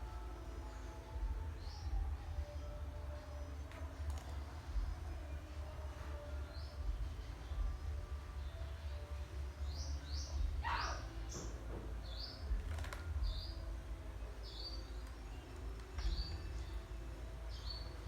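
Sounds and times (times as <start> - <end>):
steady low rumble: 0.0 - 10.6
bird chirping: 0.0 - 18.0.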